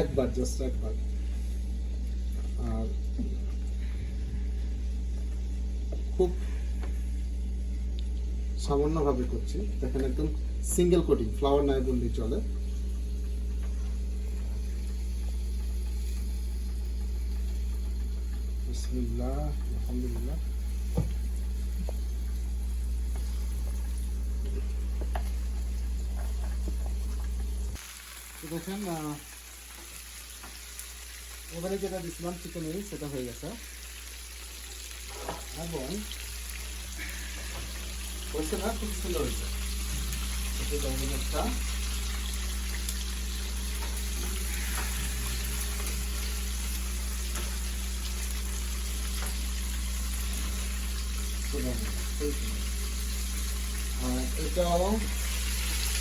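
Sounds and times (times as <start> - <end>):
low hum: 0.0 - 27.8
oil bubbling in deep fryer: 11.7 - 56.0.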